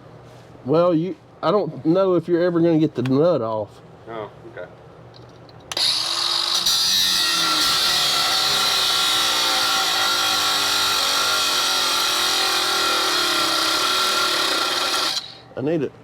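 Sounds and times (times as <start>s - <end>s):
power cutting tool whining: 5.7s - 15.4s.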